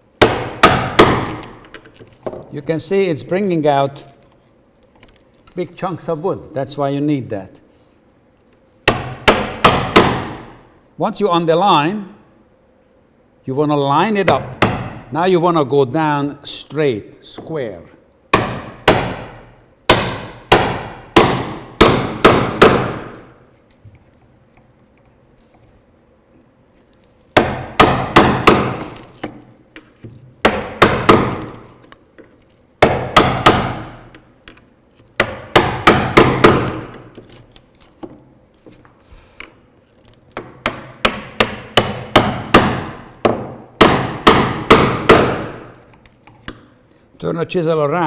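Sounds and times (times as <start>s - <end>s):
chisel chopping into wood: 0.2s - 1.7s, 8.8s - 10.6s, 14.3s - 15.0s, 18.3s - 23.4s, 27.4s - 31.9s, 32.8s - 34.2s, 35.2s - 37.4s, 40.4s - 46.6s.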